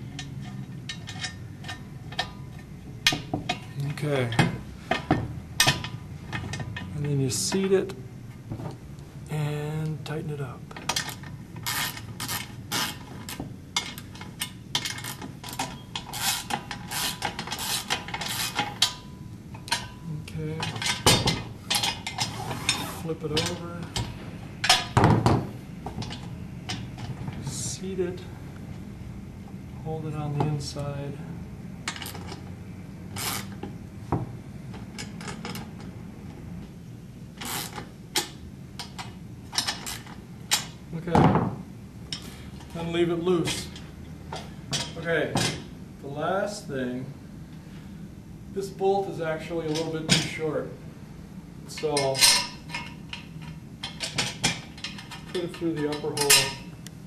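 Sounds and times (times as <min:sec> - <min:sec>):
metal parts scraping and clinking: 0:00.0 - 0:07.6, 0:10.8 - 0:25.0, 0:31.8 - 0:32.5, 0:33.1 - 0:33.7, 0:34.7 - 0:36.0, 0:37.4 - 0:40.8, 0:51.7 - 0:56.8.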